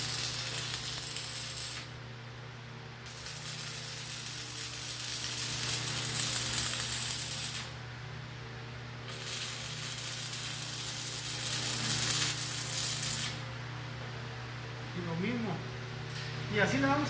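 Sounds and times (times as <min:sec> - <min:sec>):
welding arc crackling: 0:00.0 - 0:02.0, 0:03.0 - 0:07.8, 0:09.1 - 0:13.5
steady low hum: 0:00.0 - 0:17.0.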